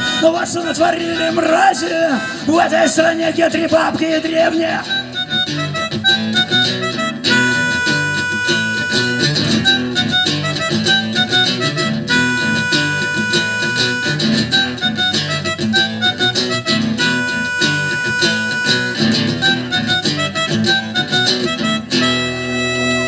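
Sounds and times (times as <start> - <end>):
harmonica: 0.0 - 2.8, 3.8 - 23.0
strummed guitar: 0.0 - 23.0
steady beat: 4.9 - 23.0.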